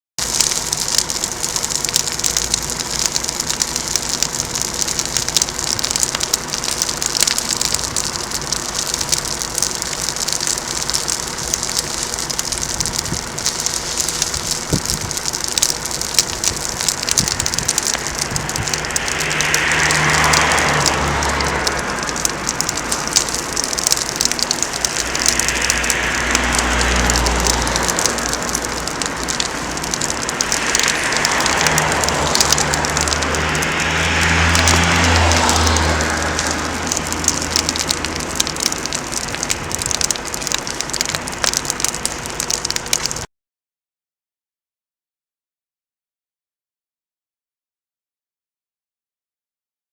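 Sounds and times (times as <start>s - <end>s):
fire crackling and hissing: 0.2s - 43.3s.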